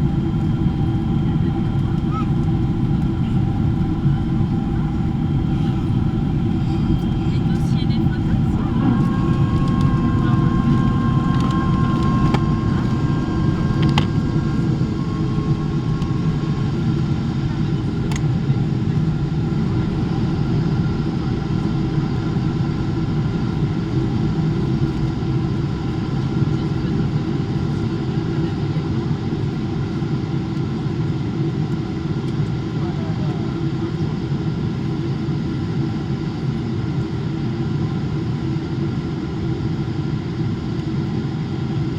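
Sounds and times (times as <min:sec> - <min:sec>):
airplane cabin rumble: 0:00.0 - 0:39.0
thin whine: 0:06.6 - 0:17.6.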